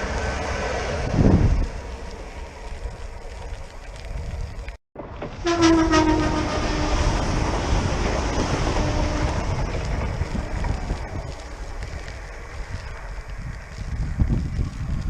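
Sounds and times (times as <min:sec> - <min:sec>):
train rumbling past with wheel noise: 0:00.0 - 0:15.0
train horn: 0:05.4 - 0:07.7, 0:08.3 - 0:09.8.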